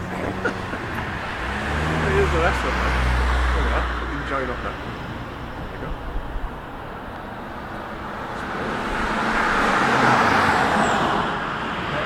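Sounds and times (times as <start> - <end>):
car driving past: 0.0 - 4.2, 8.2 - 12.0.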